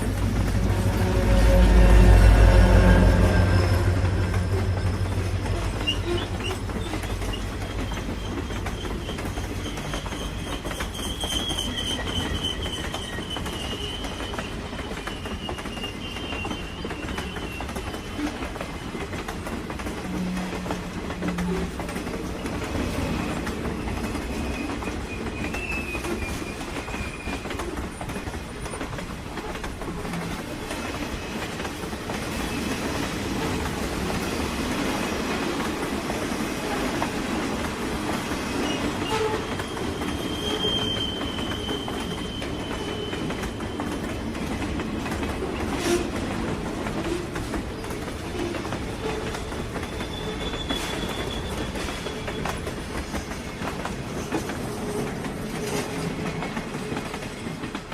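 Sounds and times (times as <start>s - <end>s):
train rumbling on rails: 0.0s - 57.9s
high wheel squeals: 0.3s - 18.5s, 38.4s - 44.2s, 48.6s - 52.7s.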